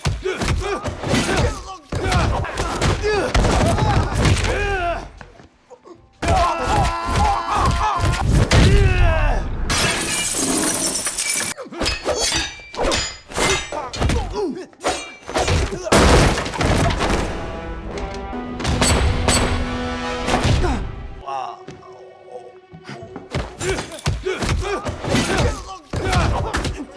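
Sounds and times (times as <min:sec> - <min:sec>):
glass shattering: 0:09.7 - 0:13.9
action movie music: 0:16.5 - 0:26.8.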